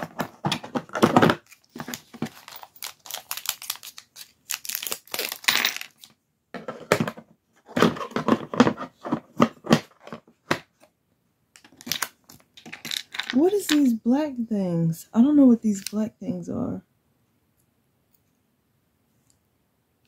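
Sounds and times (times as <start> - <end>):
packaging crinkling: 1.3 - 6.1.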